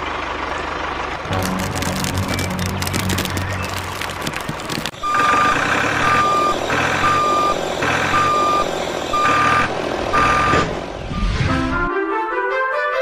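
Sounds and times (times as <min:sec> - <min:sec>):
reversing alarm beeping: 0:05.0 - 0:11.6.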